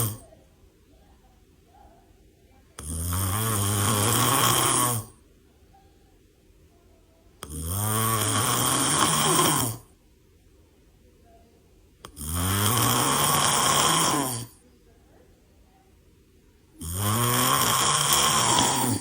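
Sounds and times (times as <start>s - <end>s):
person snoring: 0.0s - 0.3s, 2.8s - 5.2s, 7.4s - 9.9s, 12.1s - 14.6s, 16.8s - 19.0s.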